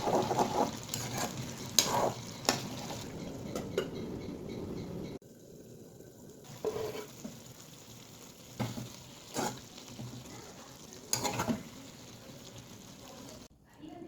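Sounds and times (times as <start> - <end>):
spoon scraping a pan: 0.0 - 4.0, 6.5 - 7.7, 8.5 - 13.4
vegetables sizzling in a pan: 0.0 - 4.1, 5.2 - 13.5.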